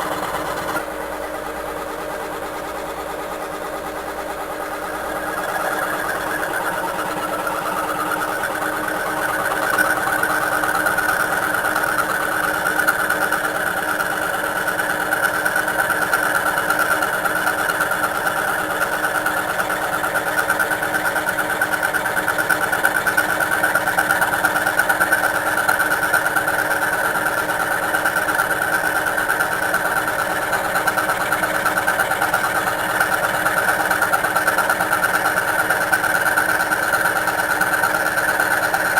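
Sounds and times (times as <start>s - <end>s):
scroll saw cutting steel: 5.0s - 12.1s.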